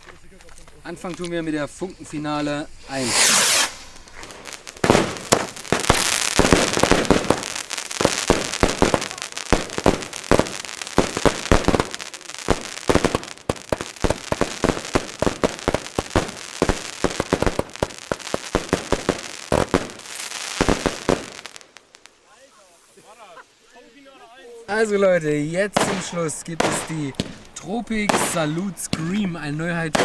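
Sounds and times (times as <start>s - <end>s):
fireworks battery rapid bangs: 0.0s - 21.8s, 25.2s - 30.0s.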